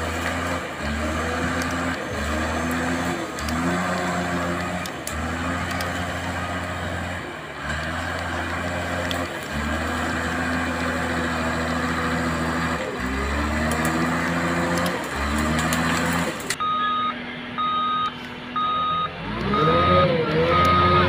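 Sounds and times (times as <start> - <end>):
toy bulldozer engine drone: 0.0 - 17.0, 17.6 - 21.0
reversing beeper: 16.6 - 21.0.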